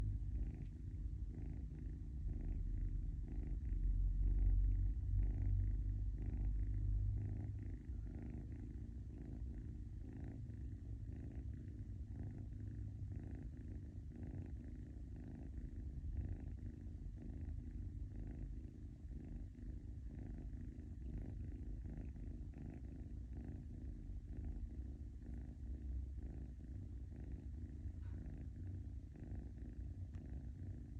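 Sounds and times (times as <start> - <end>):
soft snoring: 0.0 - 30.9.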